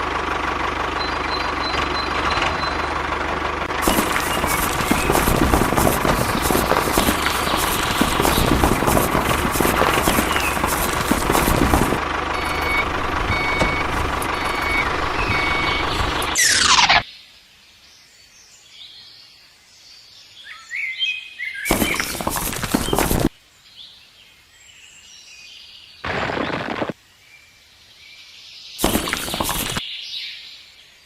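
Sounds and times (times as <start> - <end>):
loud steady machine noise: 0.4 - 17.0
birds chirping: 3.7 - 17.0, 21.5 - 23.3, 28.8 - 29.8
short beeps: 12.4 - 17.0.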